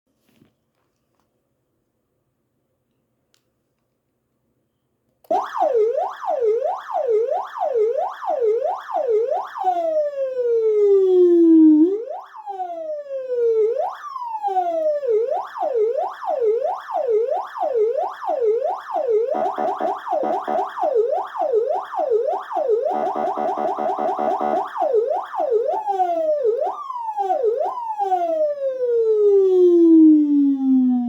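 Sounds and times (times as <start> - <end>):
emergency vehicle siren yelping: 5.3 - 31.0
rapid pulsing tone: 19.3 - 24.7.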